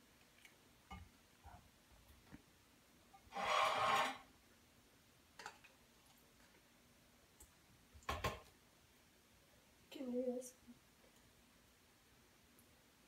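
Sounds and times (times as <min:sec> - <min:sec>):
rustling scrape on counter: 0:03.3 - 0:04.2.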